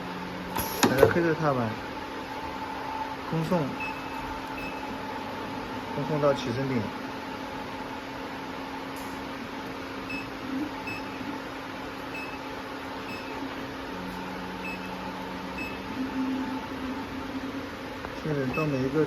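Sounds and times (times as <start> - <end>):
sewing machine electrical hum: 0.0 - 19.0
low steady tone: 14.0 - 18.8
faint short beeps: 18.5 - 18.8.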